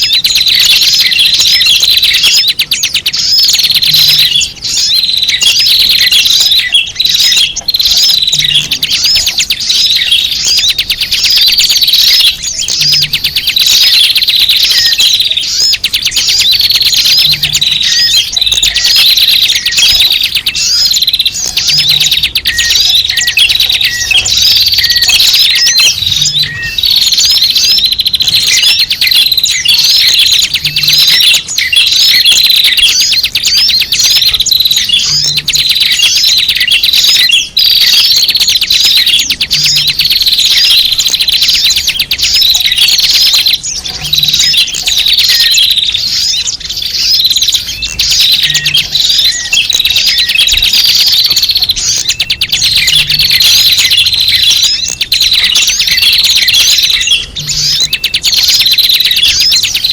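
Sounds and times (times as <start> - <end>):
small birds chirping and twittering: 0.0 - 59.9.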